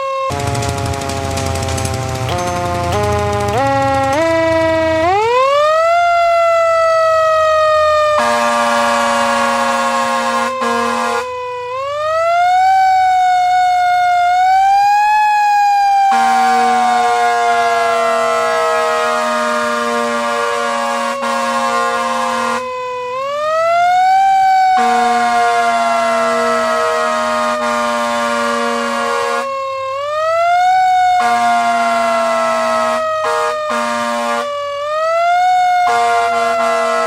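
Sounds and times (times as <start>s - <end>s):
siren winding up and down: 0.0s - 37.0s
air horn blast: 0.3s - 5.3s, 8.2s - 11.4s, 16.1s - 22.7s, 24.7s - 29.5s, 31.2s - 34.6s, 35.8s - 37.0s.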